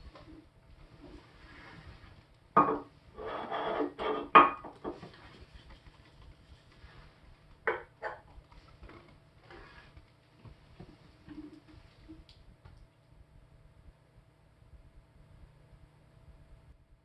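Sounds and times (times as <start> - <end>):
handling knocks and scraping: 0.0 - 12.2.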